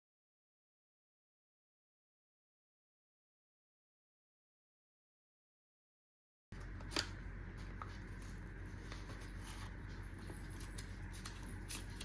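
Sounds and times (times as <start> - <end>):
low electrical hum: 6.5 - 12.0.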